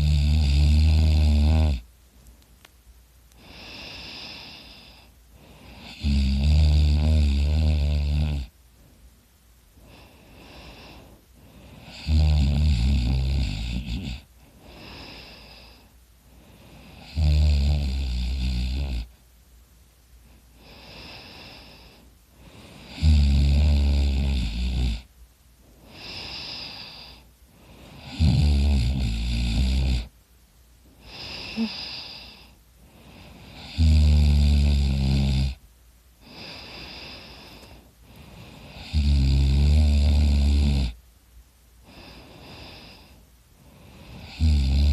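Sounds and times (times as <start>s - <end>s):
person snoring loudly: 0.0s - 1.8s, 5.6s - 8.5s, 11.8s - 15.7s, 16.9s - 19.1s, 22.8s - 25.1s, 28.0s - 30.1s, 31.0s - 32.4s, 33.5s - 35.6s, 38.6s - 41.0s, 44.0s - 44.9s
higher-sounding breath: 30.8s - 33.5s, 36.2s - 38.7s, 41.8s - 44.2s.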